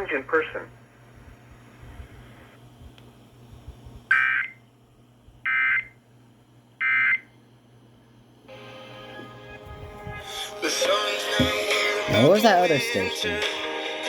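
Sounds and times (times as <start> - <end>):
low steady hum: 0.0 - 10.6.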